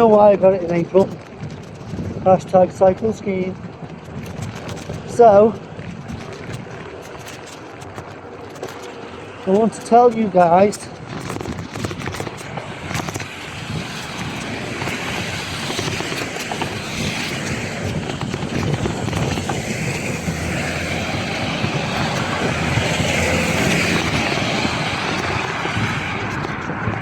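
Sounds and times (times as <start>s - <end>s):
traffic engine noise: 0.0s - 27.0s
tyre hiss on wet road: 12.6s - 26.3s.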